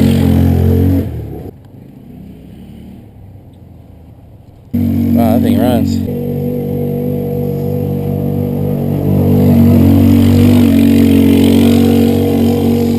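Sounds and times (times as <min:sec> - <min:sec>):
small engine running: 0:04.8 - 0:12.9.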